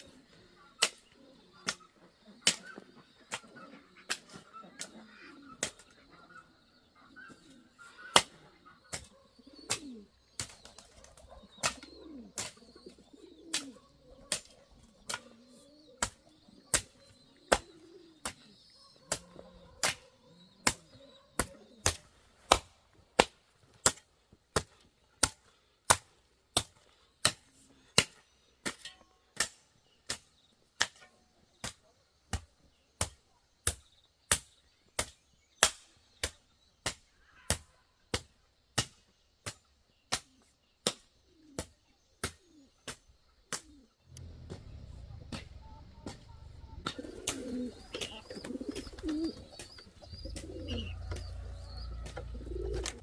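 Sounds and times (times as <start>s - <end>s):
sharp chopping strikes: 16.0s - 20.0s, 20.6s - 53.0s.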